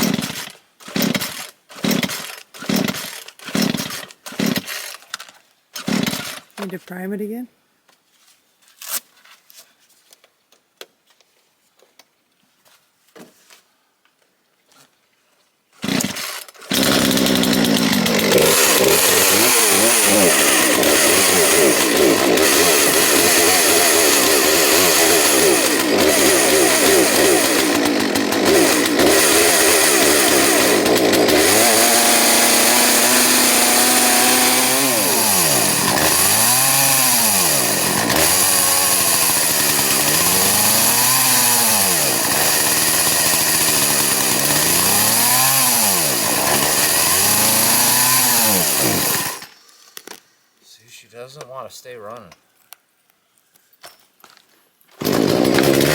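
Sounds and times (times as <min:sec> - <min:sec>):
chainsaw running: 0:00.0 - 0:05.0, 0:05.8 - 0:06.8, 0:15.8 - 0:49.6, 0:55.0 - 0:55.9.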